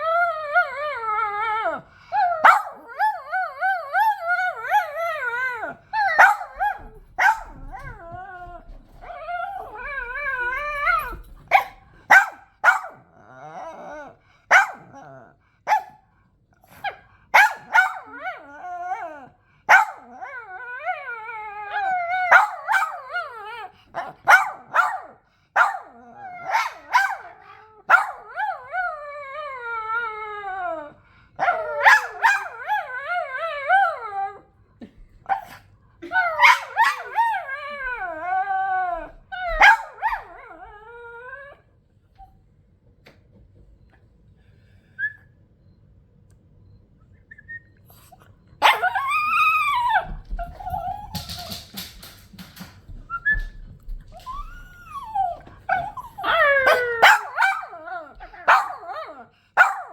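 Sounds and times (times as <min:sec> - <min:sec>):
dog howling: 0:00.0 - 0:11.3, 0:17.8 - 0:23.7, 0:36.2 - 0:41.6, 0:48.6 - 0:51.7, 0:54.1 - 0:59.3
dog barking: 0:02.4 - 0:02.8, 0:11.5 - 0:13.0, 0:14.5 - 0:14.9, 0:15.7 - 0:16.0, 0:17.4 - 0:18.2, 0:19.7 - 0:20.0, 0:24.0 - 0:25.9, 0:26.5 - 0:28.2, 0:31.8 - 0:32.5, 0:39.6 - 0:40.2, 0:48.6 - 0:49.0, 0:56.7 - 0:57.7, 0:58.4 - 0:59.9.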